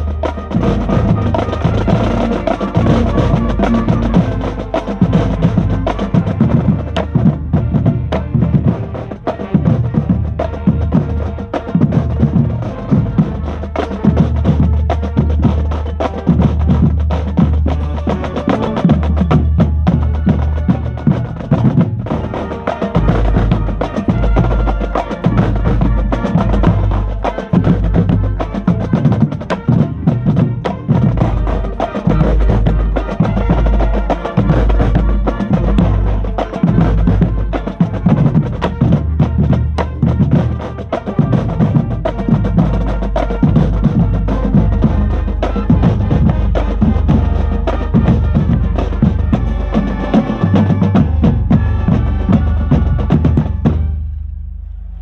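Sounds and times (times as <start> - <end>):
long held low brass notes: 0.0 - 55.0.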